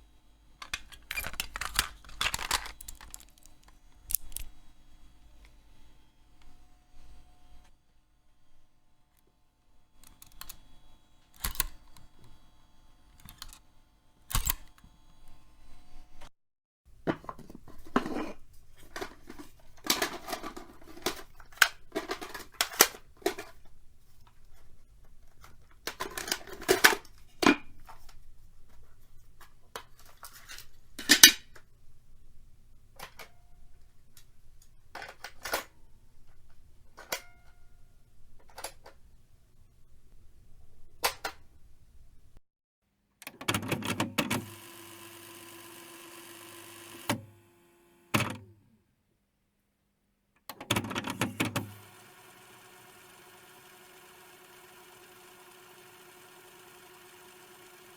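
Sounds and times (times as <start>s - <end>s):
cassette tape plastic clicks: 0.6s - 4.6s, 10.0s - 10.6s, 11.3s - 12.4s, 13.2s - 13.6s, 14.3s - 14.9s, 18.8s - 28.2s.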